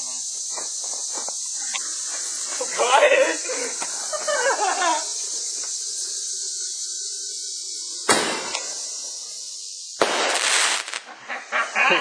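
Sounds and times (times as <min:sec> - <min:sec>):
steady hiss: 0:00.0 - 0:12.0
firework bang: 0:08.0 - 0:08.8, 0:10.0 - 0:11.1.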